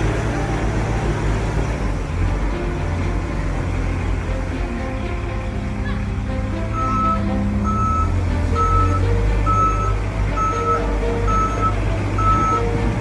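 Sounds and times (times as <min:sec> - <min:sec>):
diesel engine running: 0:00.0 - 0:13.0
backup alarm beeping: 0:06.8 - 0:12.7.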